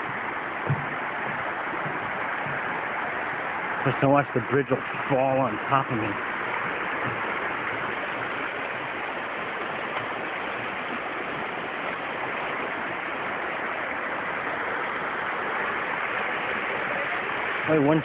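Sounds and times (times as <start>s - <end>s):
creek water rushing: 0.0s - 18.0s.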